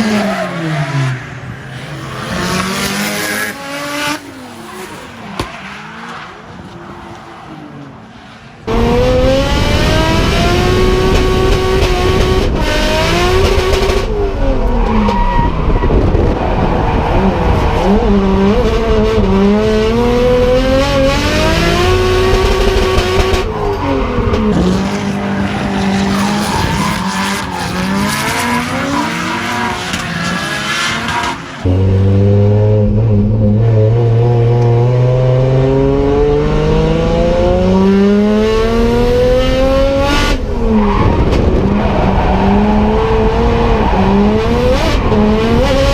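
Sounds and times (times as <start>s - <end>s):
car engine revving hard: 0.0s - 45.9s
tyres squealing: 24.3s - 31.8s.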